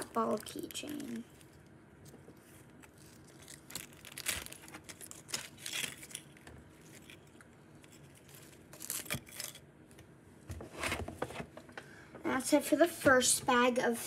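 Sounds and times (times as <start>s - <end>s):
plastic packaging rustling: 0.0s - 9.7s.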